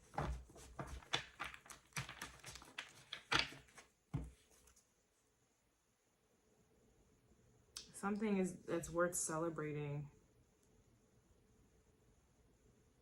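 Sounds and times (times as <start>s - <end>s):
cards tapping and rustling: 0.0s - 4.8s.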